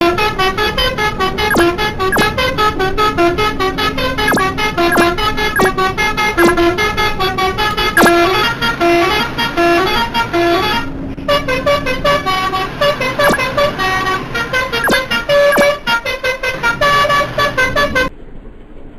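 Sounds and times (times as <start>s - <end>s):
multi-tone bus horn tune: 8.7s - 13.1s.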